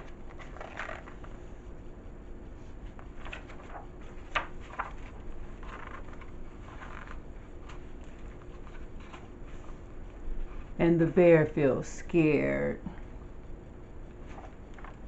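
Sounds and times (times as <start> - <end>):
rustling and handling noises: 0.0 - 1.8, 2.4 - 11.5, 14.0 - 15.0
low hum: 0.0 - 15.0.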